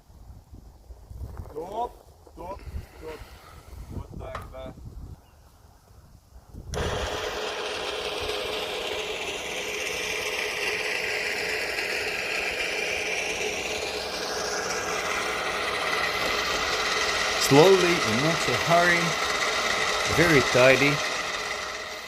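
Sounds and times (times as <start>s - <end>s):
motor running steadily: 6.7s - 22.0s.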